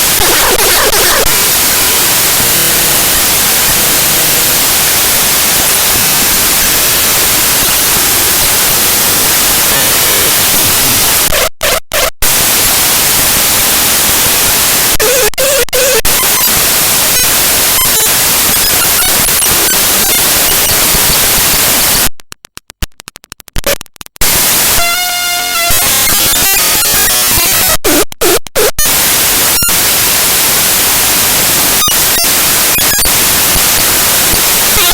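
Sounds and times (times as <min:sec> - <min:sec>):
harsh digital static: 0:00.0 - 0:34.9
buzzing pitched tone: 0:16.1 - 0:21.6.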